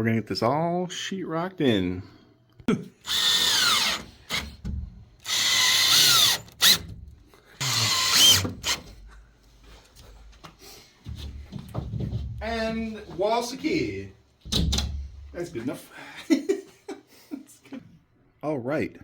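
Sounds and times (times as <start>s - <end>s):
power drill driving screws: 3.0s - 4.6s, 5.2s - 6.8s, 7.6s - 8.9s.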